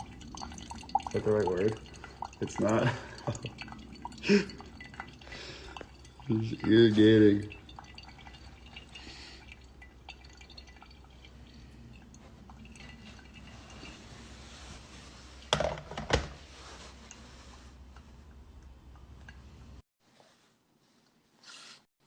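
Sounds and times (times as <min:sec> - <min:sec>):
water dripping and trickling: 0:00.0 - 0:15.5, 0:17.8 - 0:19.8.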